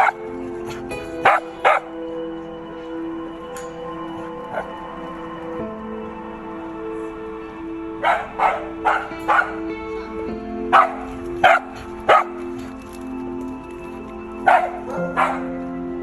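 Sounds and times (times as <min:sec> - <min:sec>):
dog barking: 0:00.0 - 0:00.2, 0:01.2 - 0:01.9, 0:08.0 - 0:09.7, 0:10.7 - 0:12.4, 0:14.4 - 0:15.6
background music with held notes: 0:00.0 - 0:16.0.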